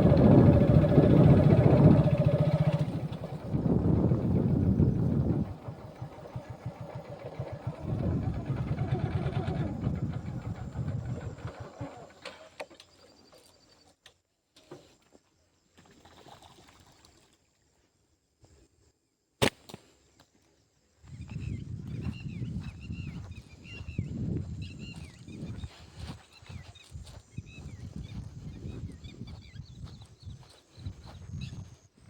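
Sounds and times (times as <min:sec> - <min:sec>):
vehicle engine running: 0:00.0 - 0:12.2
sharp crack: 0:19.4 - 0:19.8.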